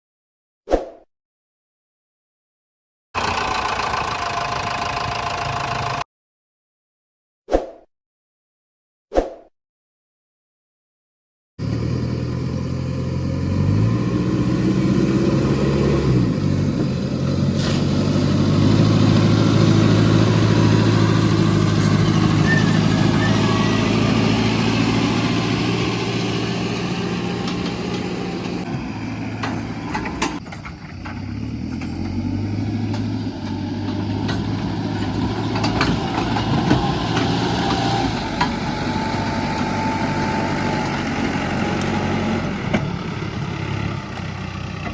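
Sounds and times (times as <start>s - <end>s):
diesel engine revving: 3.2s - 6.0s, 11.6s - 44.9s
metal clanks: 29.3s - 32.2s, 32.8s - 37.2s.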